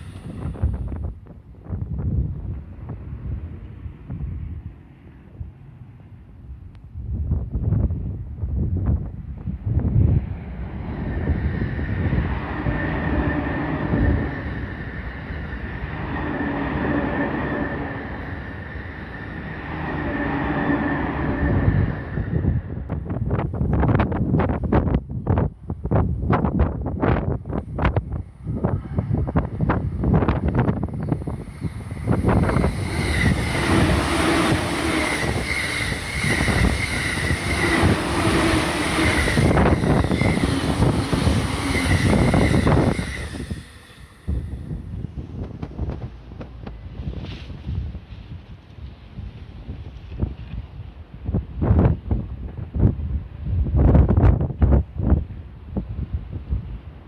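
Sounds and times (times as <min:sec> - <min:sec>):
train wheels rumbling on track: 0:00.0 - 0:57.0
wind buffeting microphone: 0:00.0 - 0:57.0
high whine: 0:10.8 - 0:23.2, 0:28.6 - 0:44.9.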